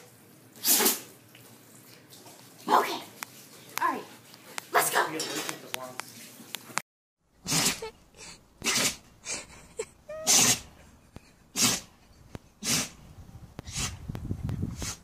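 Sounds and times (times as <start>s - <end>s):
dog sneezing: 0.6s - 1.1s, 7.4s - 10.8s, 11.5s - 12.0s, 12.6s - 13.0s, 13.7s - 14.0s.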